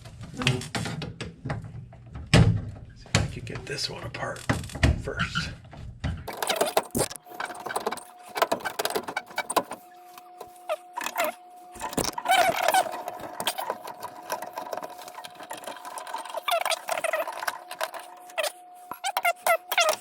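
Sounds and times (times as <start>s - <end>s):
short squeaky glides: 6.3s - 20.0s
tools and metal parts rattling: 6.3s - 20.0s.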